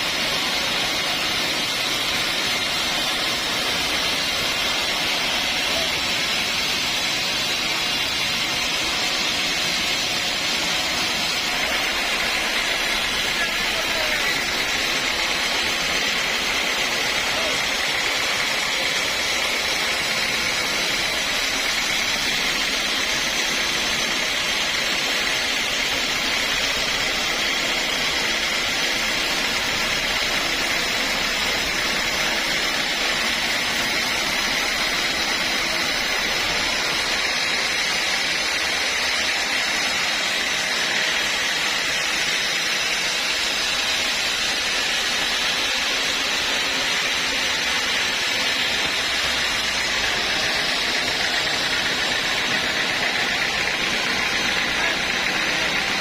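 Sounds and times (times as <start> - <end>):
saw whining: 0.0 - 56.0.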